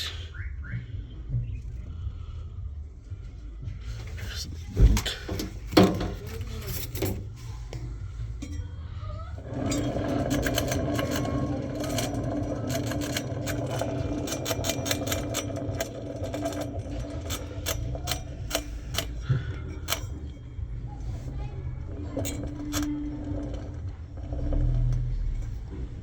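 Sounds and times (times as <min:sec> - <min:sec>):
washing machine drum grinding hum: 0:03.8 - 0:26.0
rattle of clicks: 0:09.4 - 0:26.0.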